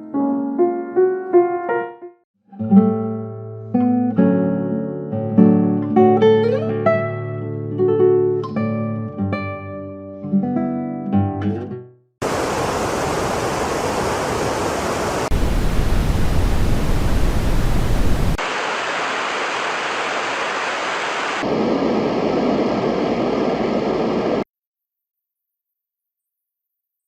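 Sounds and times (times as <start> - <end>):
white-noise machine hissing: 12.2 - 24.4.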